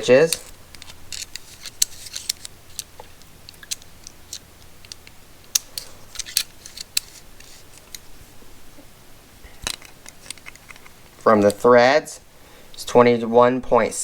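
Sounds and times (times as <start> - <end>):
small metal clicks and ticks: 0.0 - 8.0.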